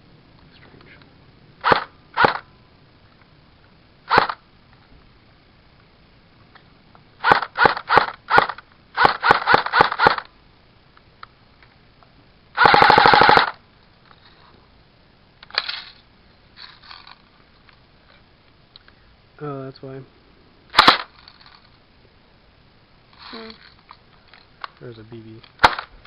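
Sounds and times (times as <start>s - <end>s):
airsoft rifle single shots: 1.6s - 2.4s, 4.1s - 4.4s, 7.2s - 10.2s, 20.7s - 21.1s, 25.6s - 25.9s
airsoft rifle full-auto burst: 1.6s - 2.5s, 4.1s - 4.4s, 7.2s - 10.3s, 12.6s - 13.6s, 20.7s - 21.1s, 25.6s - 25.9s
faint clicks: 17.6s - 19.0s.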